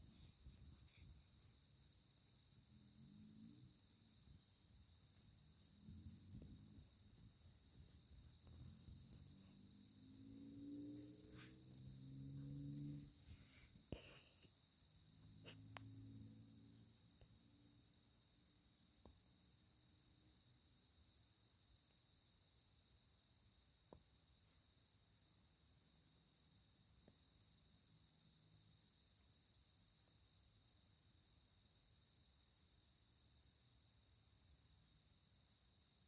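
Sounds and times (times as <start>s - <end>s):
faint low hum: 0.0s - 25.0s
crickets chirping: 0.0s - 36.0s.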